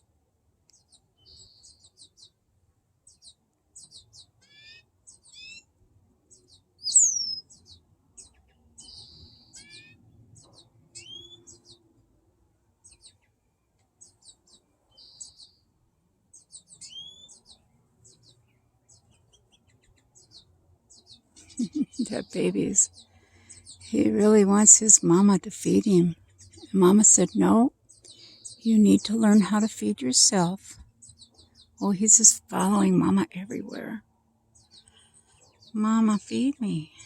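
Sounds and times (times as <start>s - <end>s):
fledgling bird begging chirps: 3.1s - 5.7s, 6.4s - 11.8s, 16.4s - 34.0s.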